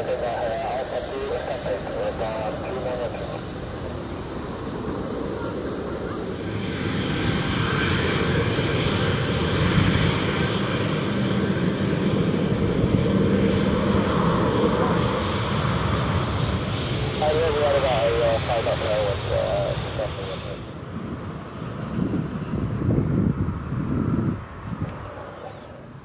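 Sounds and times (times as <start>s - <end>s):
aircraft engines running: 0.0s - 26.0s.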